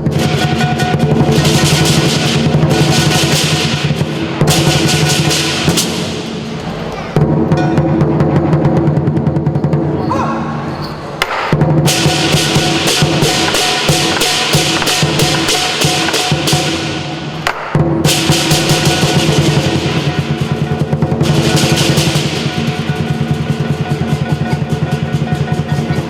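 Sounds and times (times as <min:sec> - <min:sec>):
big drum beating: 0:00.0 - 0:26.0
cymbal clashes: 0:10.7 - 0:26.0.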